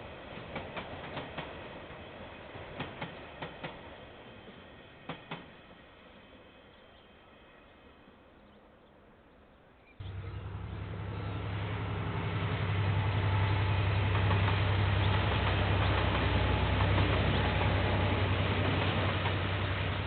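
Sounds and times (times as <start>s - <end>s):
locomotive engine rumbling: 10.0s - 20.0s.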